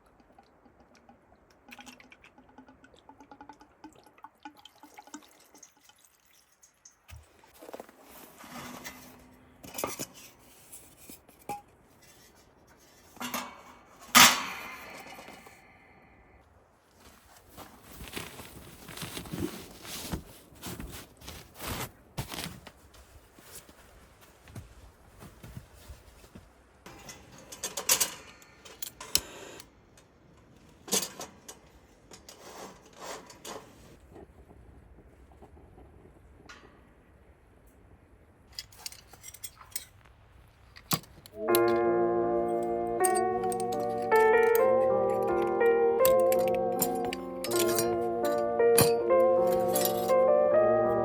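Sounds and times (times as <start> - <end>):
metal cookware clinking: 13.1 - 15.3, 43.0 - 44.7, 46.0 - 50.2
objects handled clicking and rustling: 17.0 - 29.3, 38.5 - 41.8, 43.0 - 44.7, 45.3 - 50.2.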